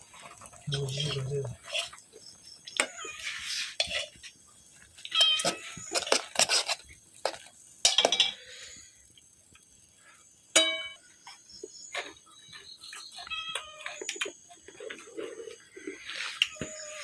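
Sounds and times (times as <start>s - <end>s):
metal dishes clinking: 5.1s - 8.4s, 10.6s - 11.0s
sharp ringing metal clang: 10.6s - 11.0s.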